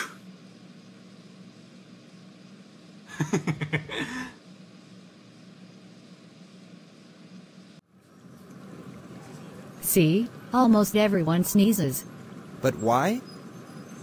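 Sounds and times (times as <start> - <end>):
steady low hum: 0.0 - 14.0
person laughing: 3.1 - 4.4.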